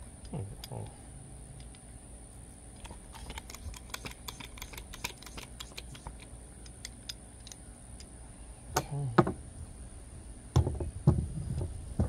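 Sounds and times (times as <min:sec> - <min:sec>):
small metal parts clicking: 0:02.8 - 0:08.1.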